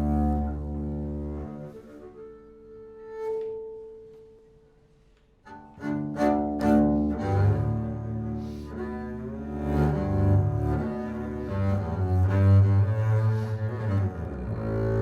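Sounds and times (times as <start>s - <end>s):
double bass notes: 0.0s - 1.9s, 5.5s - 15.0s.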